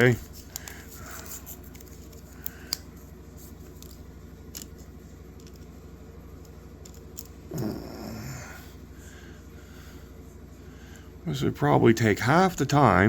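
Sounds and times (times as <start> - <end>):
faint clicks of small parts: 0.0 - 3.0, 3.6 - 5.7, 6.4 - 7.4
steady low hum: 0.0 - 13.0.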